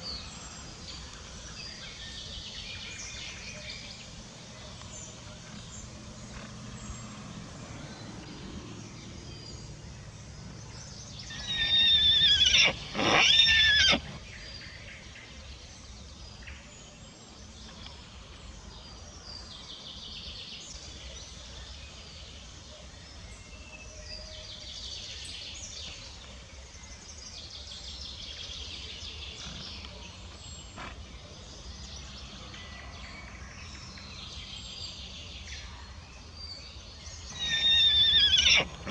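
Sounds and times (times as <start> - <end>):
pony whinnying: 11.3 - 14.2, 37.3 - 38.9.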